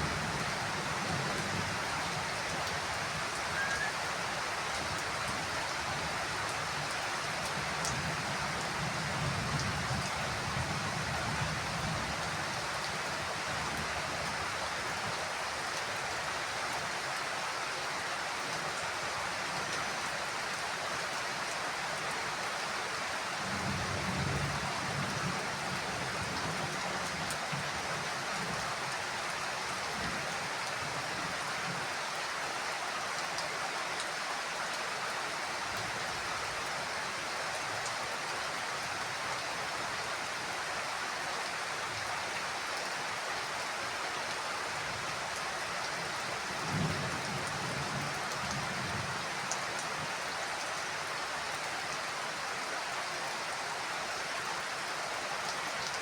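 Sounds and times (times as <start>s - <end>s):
heavy rain on a roof: 0.0s - 56.0s.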